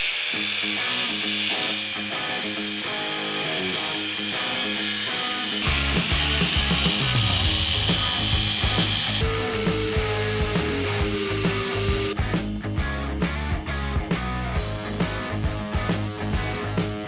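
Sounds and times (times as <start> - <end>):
ratchet-like clicking and rasping: 0.0 - 12.2.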